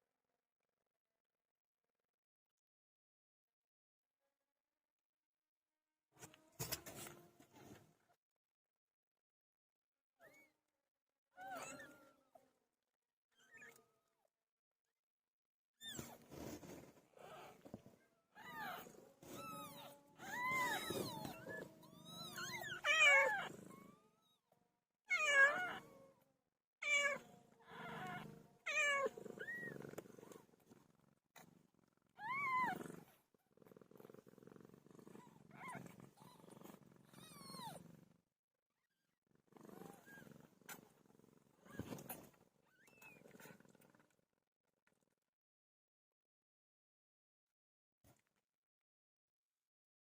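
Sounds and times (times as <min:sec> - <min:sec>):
cat purring: 0:16.1 - 0:24.1, 0:26.9 - 0:38.2
kittens mewing: 0:18.4 - 0:23.5.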